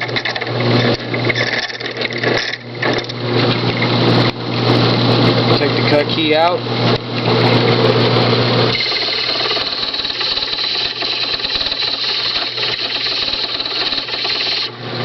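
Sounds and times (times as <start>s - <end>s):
key scraping on spinning brush: 8.7s - 14.7s
key machine motor running: 8.7s - 14.8s.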